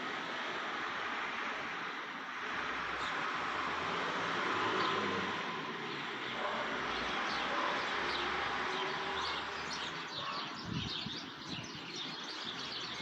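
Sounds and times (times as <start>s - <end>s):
steady outdoor hiss: 0.0s - 13.0s
birds chirping: 4.7s - 13.0s.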